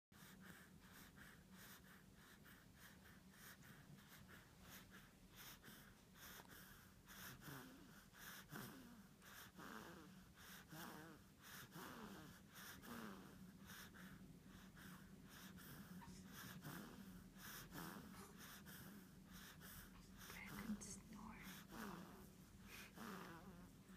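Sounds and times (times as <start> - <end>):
faint snoring: 0.2 - 23.9
steady low hum: 0.2 - 23.9.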